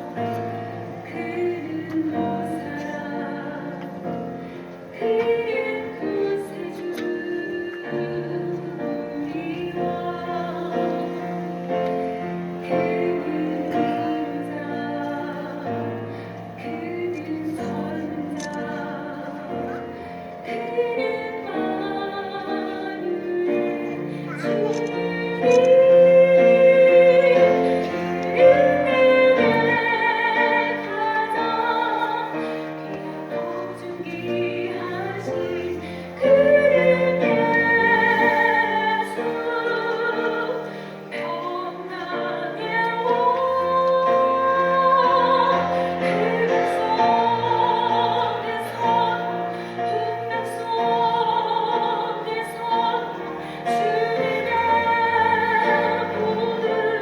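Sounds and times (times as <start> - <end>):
piano chords: 0.0 - 57.0
church choir singing: 20.5 - 57.0.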